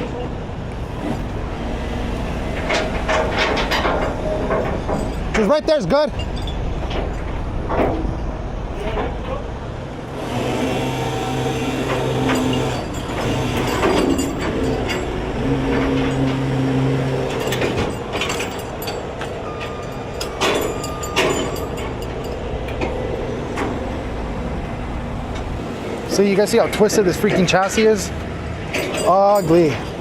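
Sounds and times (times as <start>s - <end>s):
heavy truck engine drone: 0.0s - 29.0s
metal clanks and knocks: 2.4s - 8.2s, 11.4s - 24.1s, 25.2s - 30.0s.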